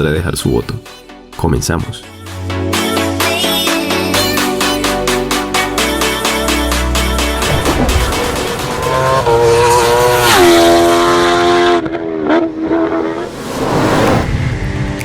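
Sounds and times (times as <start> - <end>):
motorcycle engine accelerating: 7.4 - 15.0.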